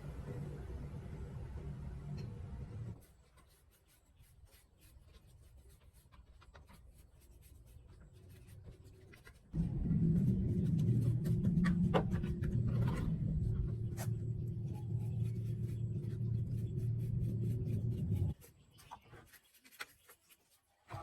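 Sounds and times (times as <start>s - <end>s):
machine hum: 0.0s - 3.0s, 9.6s - 18.3s.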